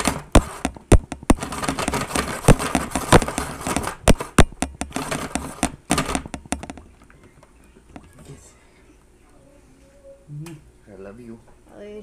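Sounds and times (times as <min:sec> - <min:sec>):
ice shaver grinding crunch: 0:00.0 - 0:05.7.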